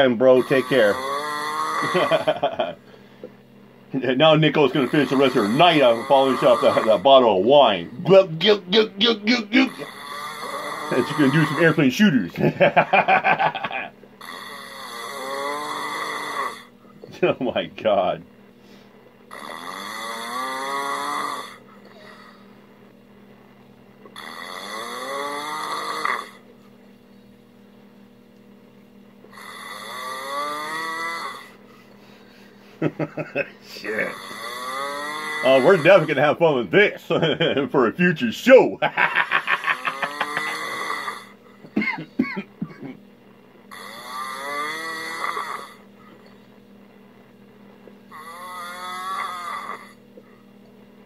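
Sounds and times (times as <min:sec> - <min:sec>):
man snoring: 0:00.0 - 0:03.0, 0:04.2 - 0:17.6, 0:19.3 - 0:22.6, 0:24.0 - 0:26.5, 0:29.3 - 0:36.6, 0:38.9 - 0:43.0, 0:43.6 - 0:46.4, 0:48.0 - 0:50.3.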